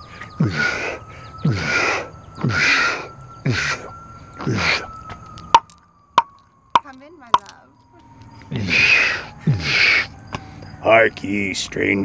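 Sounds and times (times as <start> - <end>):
bird cawing: 0.0 - 5.7, 8.4 - 10.8.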